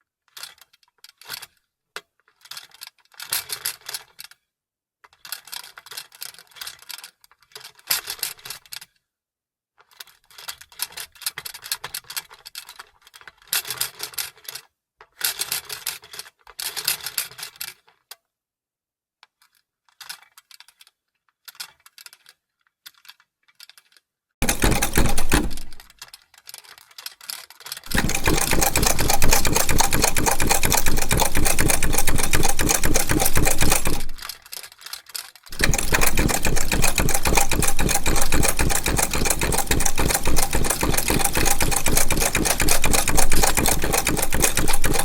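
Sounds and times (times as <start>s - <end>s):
sewing machine rapid clicking: 24.4s - 25.9s, 27.9s - 34.4s, 35.5s - 45.0s.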